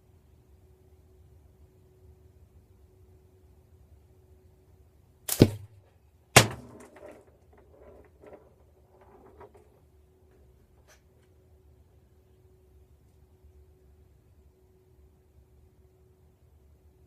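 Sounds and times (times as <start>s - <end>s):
slingshot cracks: 5.3s - 5.8s, 6.4s - 6.9s
ammo bouncing and rolling: 6.4s - 9.9s.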